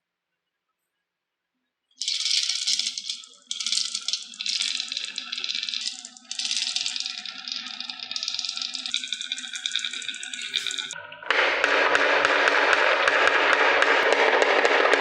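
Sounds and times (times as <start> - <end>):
marbles rattling down wooden run: 2.0 - 11.0.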